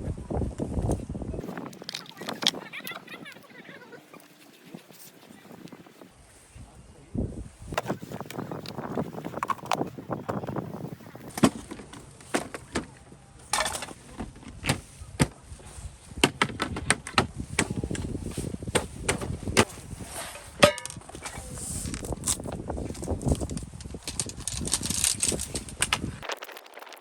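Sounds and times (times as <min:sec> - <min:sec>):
objects knocking and clattering: 0:11.3 - 0:15.3, 0:20.3 - 0:21.4.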